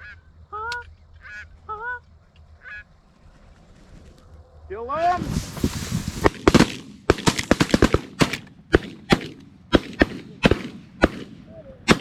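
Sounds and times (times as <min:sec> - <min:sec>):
shotgun blasts: 0:06.2 - 0:12.0.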